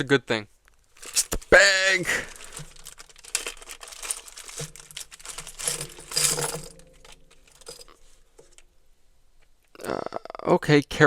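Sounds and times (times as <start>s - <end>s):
plastic bag crinkling: 0.7s - 8.6s
watch clinking: 2.2s - 8.7s.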